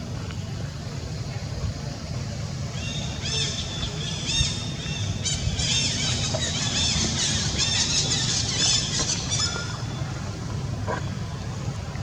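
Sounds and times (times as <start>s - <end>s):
low rumbling noise: 0.0s - 12.0s.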